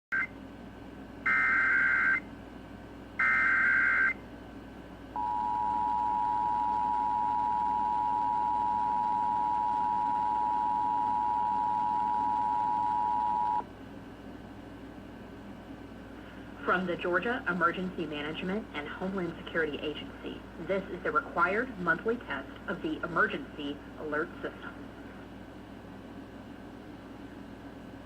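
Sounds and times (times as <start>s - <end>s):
two-tone attention signal: 5.2s - 13.6s.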